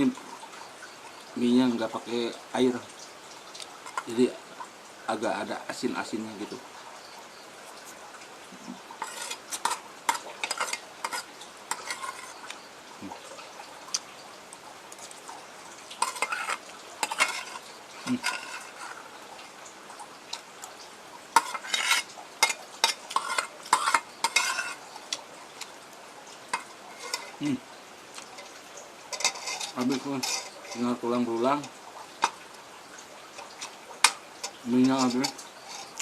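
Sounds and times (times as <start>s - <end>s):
spoon and fork scraping a bowl: 9.0s - 12.6s, 16.0s - 19.0s, 21.4s - 25.2s, 26.5s - 27.4s, 28.4s - 31.0s, 33.4s - 36.0s.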